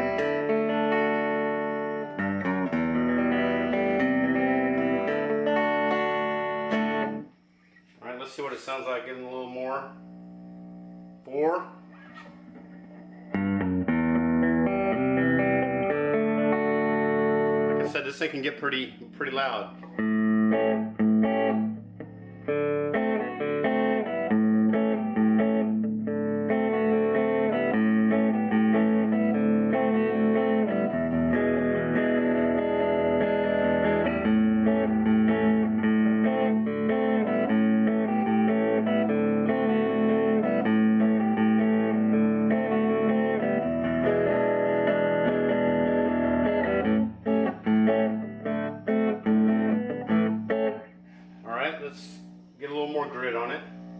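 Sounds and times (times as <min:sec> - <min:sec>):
electric guitar chords: 0:00.0 - 0:53.9.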